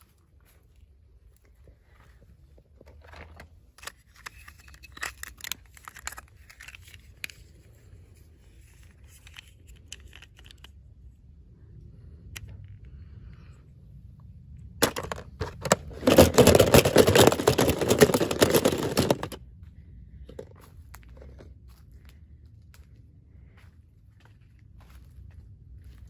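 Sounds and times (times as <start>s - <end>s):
low steady hum: 0.0s - 26.0s
packaging crinkling and tearing: 14.8s - 19.4s.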